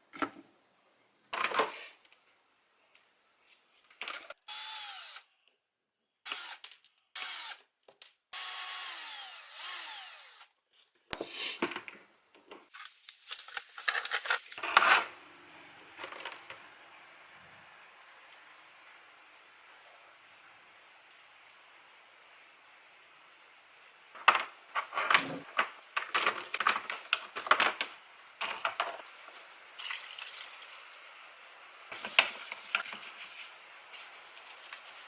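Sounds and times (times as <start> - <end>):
electric drill whining: 4.5 - 5.3, 6.3 - 6.6, 7.2 - 7.6, 8.4 - 10.5.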